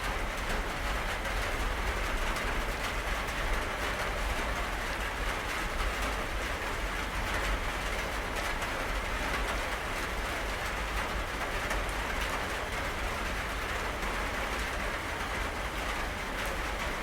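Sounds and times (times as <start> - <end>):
steady rainfall: 0.0 - 17.0.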